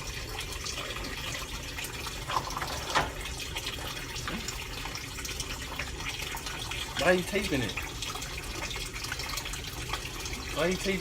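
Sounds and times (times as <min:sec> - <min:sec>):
tap running into sink: 0:02.1 - 0:04.8.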